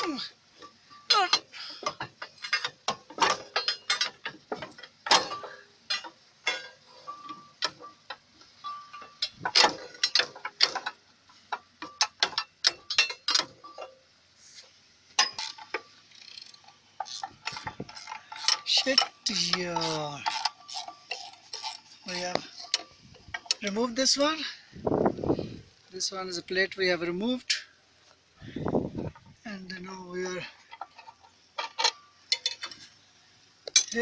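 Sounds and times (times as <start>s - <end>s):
metal tools clinking on metal: 0.0s - 14.1s, 15.2s - 24.7s, 28.4s - 33.0s, 33.6s - 34.0s.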